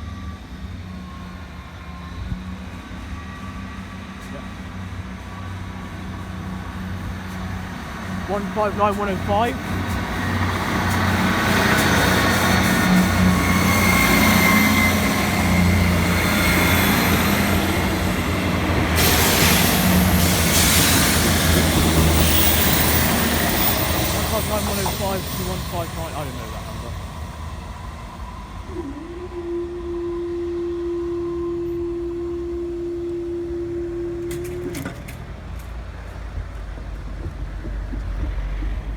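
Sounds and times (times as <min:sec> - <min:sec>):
diesel train engines humming: 0:00.0 - 0:38.9
wind: 0:00.0 - 0:38.9
traffic rumble: 0:03.8 - 0:28.9, 0:33.4 - 0:38.9
rushing hiss: 0:04.4 - 0:27.0
level crossing alarm tone: 0:08.3 - 0:09.6.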